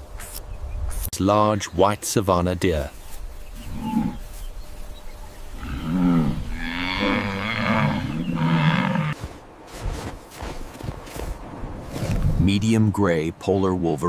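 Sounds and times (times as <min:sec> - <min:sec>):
animal bellowing call: 0:03.6 - 0:04.3, 0:05.5 - 0:09.2.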